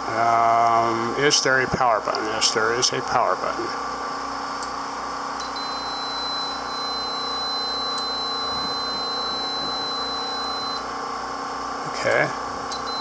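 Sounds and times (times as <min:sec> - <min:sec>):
steady hum: 0:00.0 - 0:13.0
high-pitched alarm tone: 0:05.4 - 0:10.9, 0:12.7 - 0:13.0.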